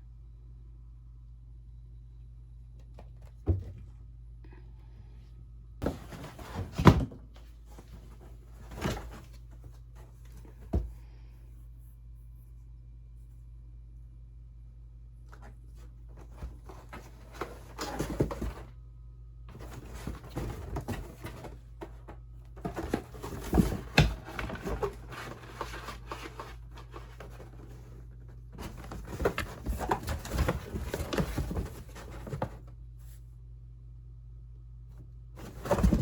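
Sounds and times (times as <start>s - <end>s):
faint steady hum: 0.0s - 36.0s.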